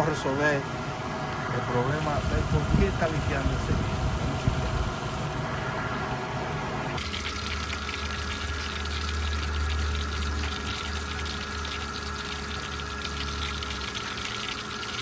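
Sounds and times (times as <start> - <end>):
pump humming: 6.7 - 15.0.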